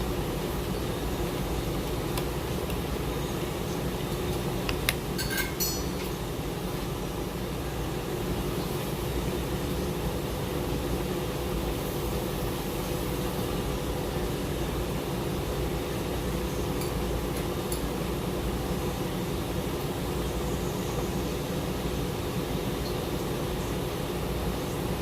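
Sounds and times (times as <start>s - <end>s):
steady mechanical hum: 0.0s - 25.0s.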